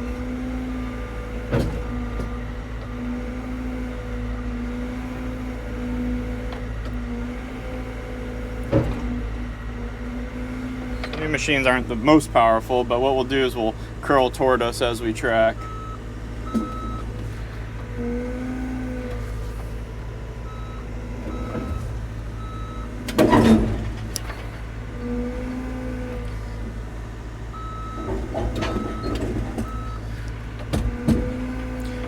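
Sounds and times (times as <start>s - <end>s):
excavator diesel engine running: 0.0s - 32.0s
travel alarm beeping: 15.5s - 17.0s, 27.5s - 30.0s.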